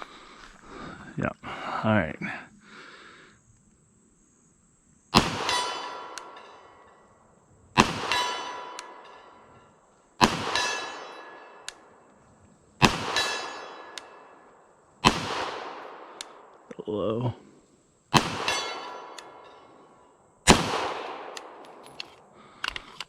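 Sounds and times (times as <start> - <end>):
pistol shots: 5.2 - 6.9, 7.8 - 9.4, 10.2 - 11.9, 12.8 - 14.4, 15.0 - 16.6, 18.1 - 19.6, 20.4 - 22.0
bullet hitting steel target: 5.2 - 7.0, 7.8 - 9.5, 10.2 - 11.8, 12.8 - 14.4, 18.2 - 19.7.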